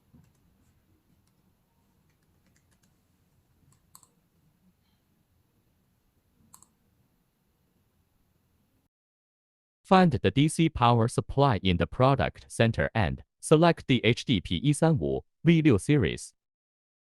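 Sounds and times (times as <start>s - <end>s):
computer clicks: 2.1s - 2.9s, 3.7s - 4.2s, 6.5s - 6.7s.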